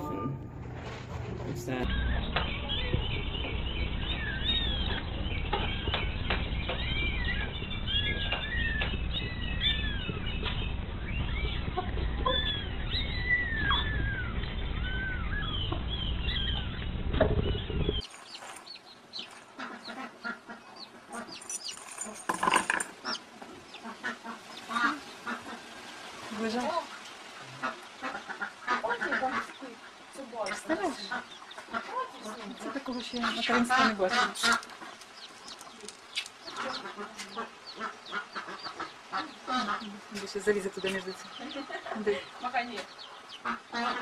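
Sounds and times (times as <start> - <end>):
low rumble: 0.0 - 18.0
young birds peeping: 1.5 - 44.0.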